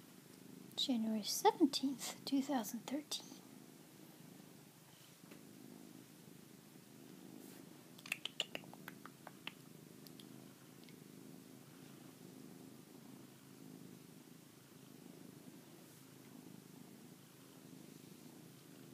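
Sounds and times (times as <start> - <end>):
cat purring: 0.0 - 18.9
faint clicks: 8.0 - 11.0.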